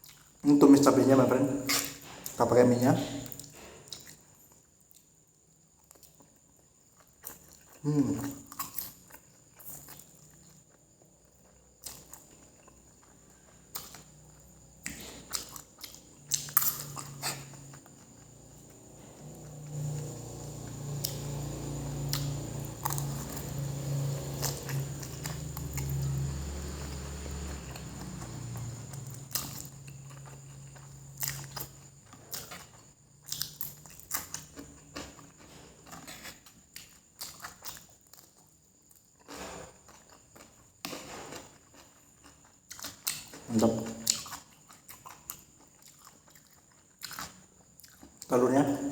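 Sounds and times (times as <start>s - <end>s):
person chewing: 0.0s - 0.9s, 1.6s - 5.1s, 5.8s - 38.5s, 39.2s - 48.3s
low hum: 18.9s - 31.4s.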